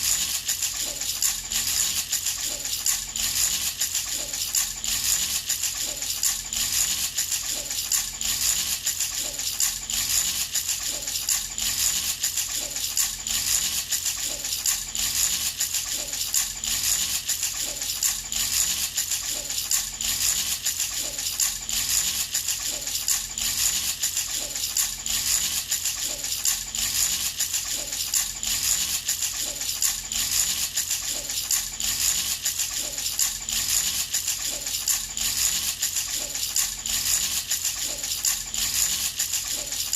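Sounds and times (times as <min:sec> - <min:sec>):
baby rattle shaken: 0:00.0 - 0:39.9.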